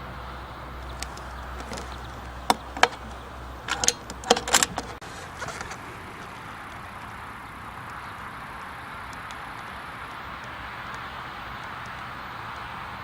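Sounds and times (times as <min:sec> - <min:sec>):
outdoor background hiss: 0:00.0 - 0:13.0
air rifle metallic clicks: 0:00.9 - 0:05.8
rifle rattles: 0:00.9 - 0:05.9.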